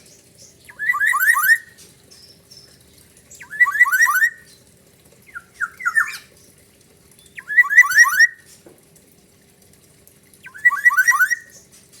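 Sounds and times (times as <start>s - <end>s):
bird singing siren-like notes: 0.7s - 1.7s, 3.4s - 4.4s, 7.3s - 8.4s, 10.5s - 11.6s.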